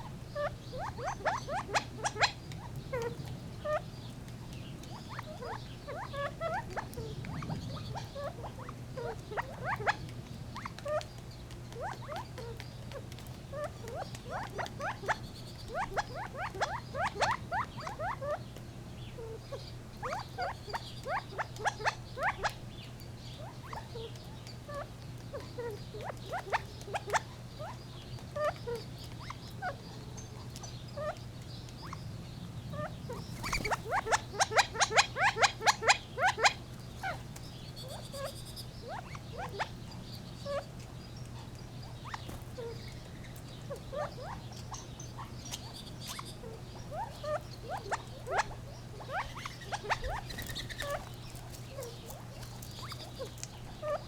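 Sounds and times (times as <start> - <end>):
quail calling: 0.0 - 4.0, 4.8 - 11.0, 13.5 - 18.4, 19.2 - 22.6, 32.7 - 54.0.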